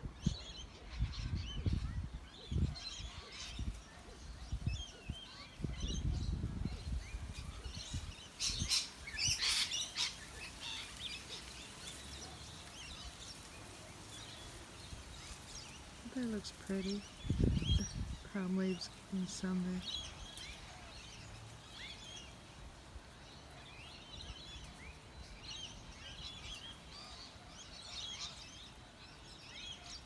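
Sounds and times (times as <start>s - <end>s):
flock of birds chirping: 0.0s - 30.0s
low microphone rumbles: 17.0s - 18.3s.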